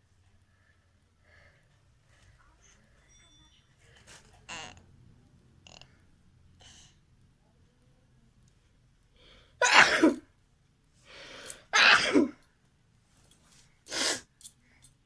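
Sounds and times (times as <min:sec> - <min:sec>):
person sneezing: 0:09.6 - 0:10.2, 0:11.7 - 0:12.4, 0:13.9 - 0:14.3.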